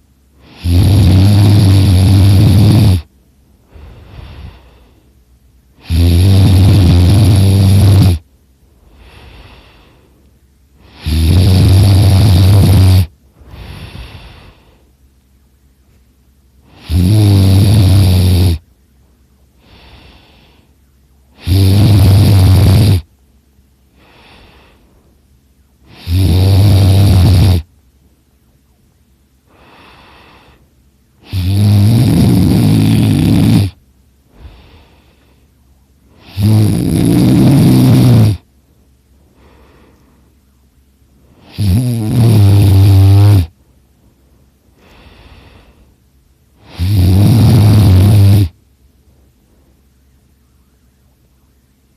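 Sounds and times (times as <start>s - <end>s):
person snoring loudly: 0.4s - 3.1s, 5.8s - 8.2s, 10.8s - 14.7s, 16.7s - 18.6s, 21.4s - 23.1s, 25.9s - 27.7s, 31.2s - 33.8s, 36.1s - 38.4s, 41.3s - 43.5s, 46.6s - 48.6s
faint breath: 3.6s - 5.3s, 8.6s - 11.0s, 13.3s - 15.1s, 19.0s - 21.4s, 23.9s - 26.0s, 29.4s - 30.9s, 34.2s - 36.3s, 38.4s - 41.6s, 43.4s - 46.8s, 48.5s - 51.4s.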